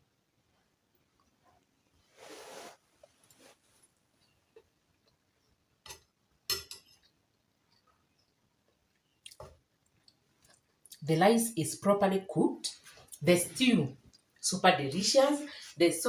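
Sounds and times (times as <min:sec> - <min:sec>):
cutlery clinking on a plate: 0:05.9 - 0:07.0
cutlery scraping a plate: 0:06.5 - 0:07.0.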